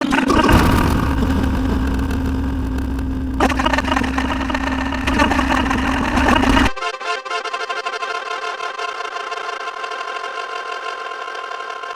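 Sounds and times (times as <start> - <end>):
engine-like rumble: 0.0 - 6.8
rough noisy layer: 0.0 - 6.8.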